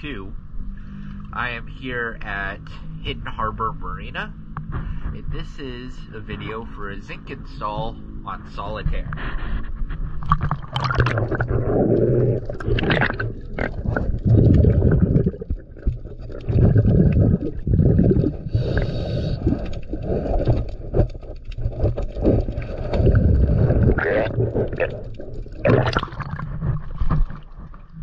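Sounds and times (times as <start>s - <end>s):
scuba regulator bubbles: 10.0s - 28.0s
sharp clicks and scrapes: 18.2s - 25.7s.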